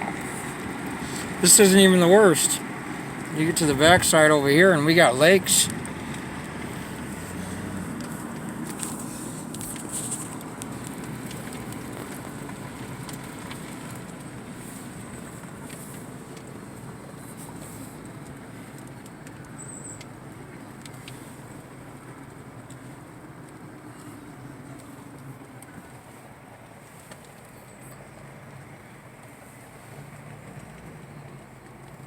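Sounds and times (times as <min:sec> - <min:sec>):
car road and engine noise: 0:00.0 - 0:32.0
faint clicks: 0:05.7 - 0:26.0.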